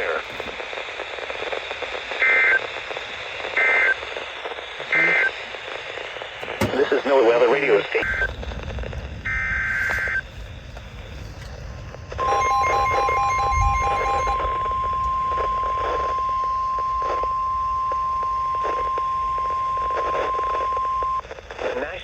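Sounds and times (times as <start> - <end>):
rapid beeping: 12.2 - 21.2
screeching data burst: 12.2 - 21.2
steady warning alarm tone: 12.2 - 21.2.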